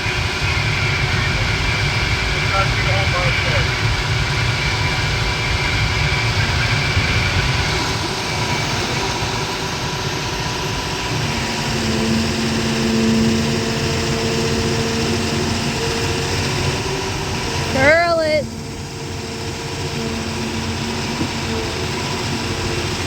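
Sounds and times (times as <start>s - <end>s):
excavator diesel engine running: 0.0s - 23.0s
steady whine: 0.0s - 23.0s.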